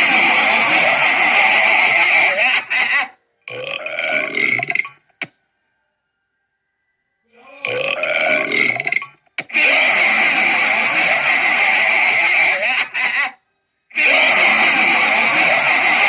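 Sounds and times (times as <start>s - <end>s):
person burping: 3.5s - 5.0s, 7.6s - 9.9s.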